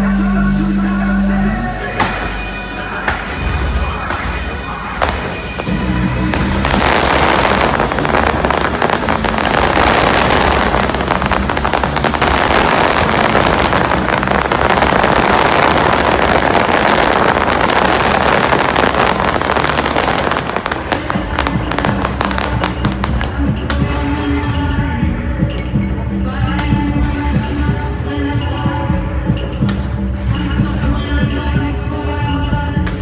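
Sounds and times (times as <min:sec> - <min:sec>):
music: 0:00.0 - 0:33.0
fireworks crackling: 0:01.2 - 0:24.5.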